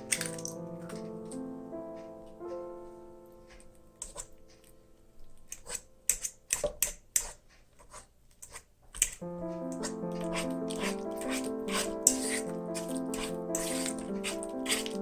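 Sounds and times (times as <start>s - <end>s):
soft piano music: 0.0s - 6.1s, 9.2s - 15.0s.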